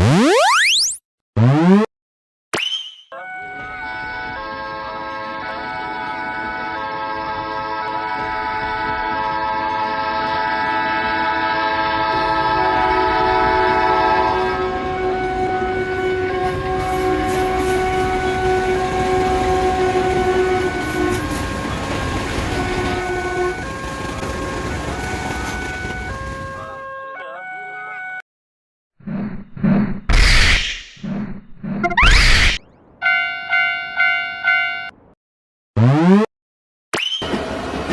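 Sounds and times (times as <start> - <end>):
train horn chord: 3.2 - 28.2
passing train rumble and clatter: 3.6 - 26.8, 37.2 - 37.9.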